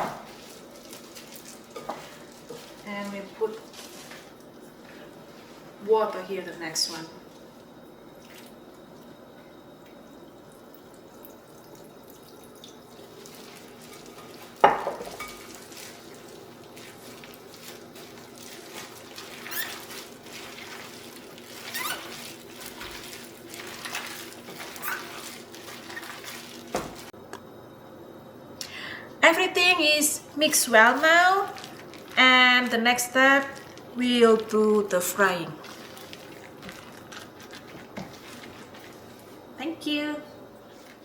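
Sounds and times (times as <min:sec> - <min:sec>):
batter squishing and scraping: 0:00.2 - 0:05.8, 0:15.3 - 0:27.2, 0:30.7 - 0:39.5.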